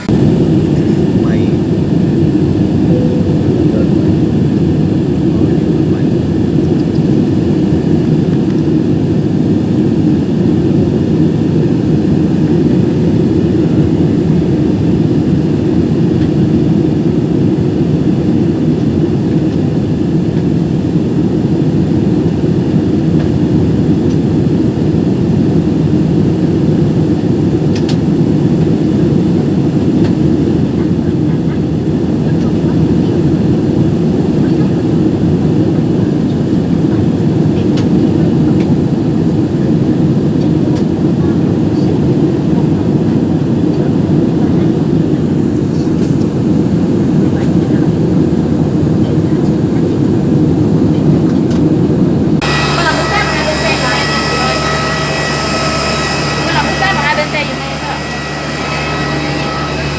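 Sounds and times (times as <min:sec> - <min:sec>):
jet airliner cabin drone: 0:00.0 - 0:59.9
thin high whine: 0:02.7 - 0:05.0, 0:52.4 - 0:59.9.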